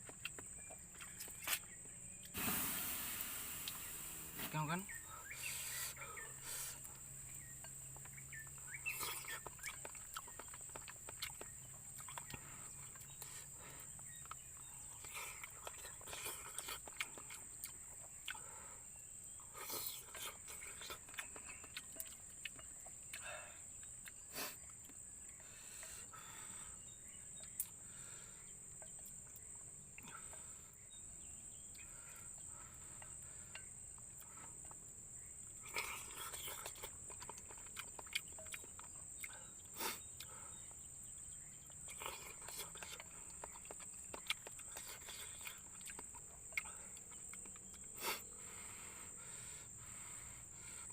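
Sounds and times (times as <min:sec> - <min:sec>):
insects droning: 0:00.0 - 0:50.9
person eating: 0:02.3 - 0:18.6, 0:19.3 - 0:25.0, 0:35.6 - 0:40.5, 0:41.7 - 0:48.3.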